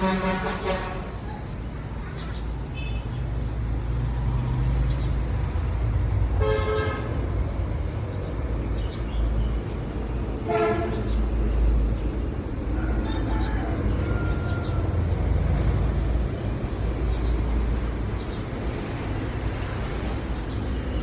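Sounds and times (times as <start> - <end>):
vehicle horn honks: 0.0 - 1.1, 6.4 - 7.1.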